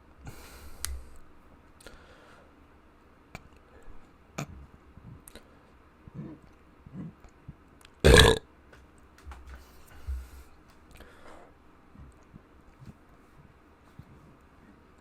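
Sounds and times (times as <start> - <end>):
person burping: 8.0 - 8.4.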